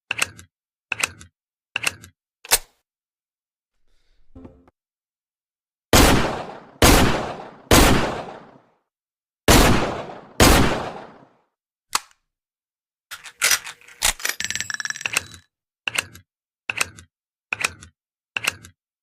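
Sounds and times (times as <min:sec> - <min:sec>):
revolver gunshots: 0:05.9 - 0:08.6, 0:09.5 - 0:11.3.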